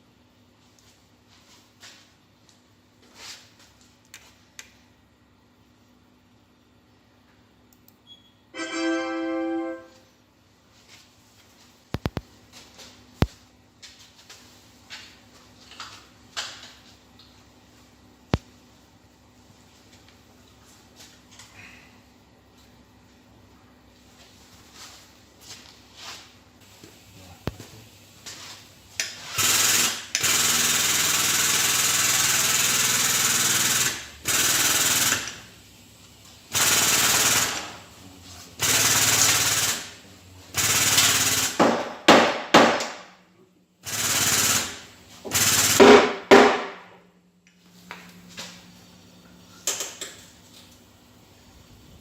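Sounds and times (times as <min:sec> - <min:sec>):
power tool running in bursts: 0:29.2 - 0:35.5, 0:36.5 - 0:37.8, 0:38.6 - 0:39.9, 0:40.5 - 0:41.6, 0:43.8 - 0:45.8.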